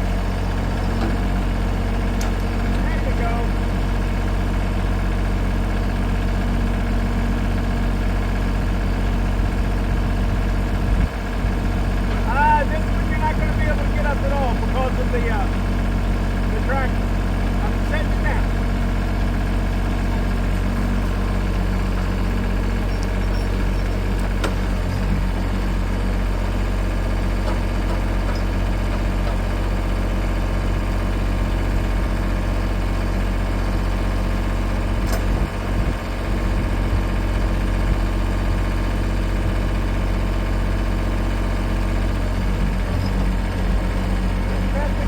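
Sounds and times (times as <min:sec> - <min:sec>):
engine idling: 0:00.0 - 0:45.0.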